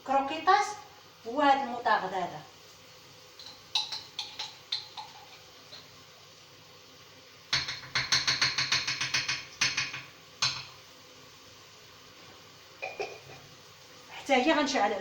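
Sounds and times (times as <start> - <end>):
utensils clattering against pan: 3.4 - 5.9, 7.6 - 10.7.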